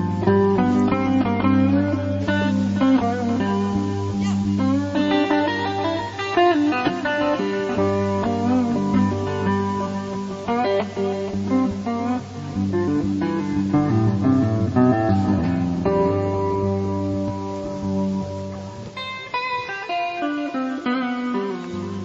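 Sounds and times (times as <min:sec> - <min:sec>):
held bass notes: 0:00.0 - 0:22.0
plucked guitar melody: 0:00.0 - 0:22.0.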